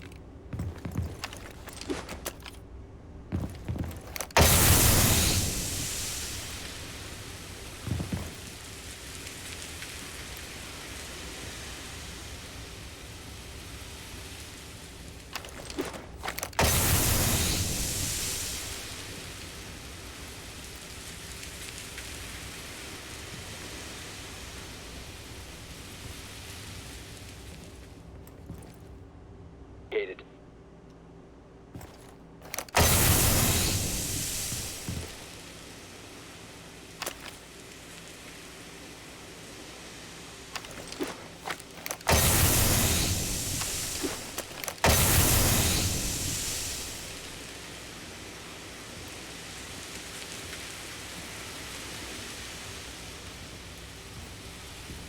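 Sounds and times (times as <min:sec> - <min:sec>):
steady background hiss: 0:00.0 - 0:55.0
loud gas release hiss: 0:04.4 - 0:08.8, 0:16.6 - 0:19.5, 0:32.8 - 0:35.4, 0:42.0 - 0:47.6.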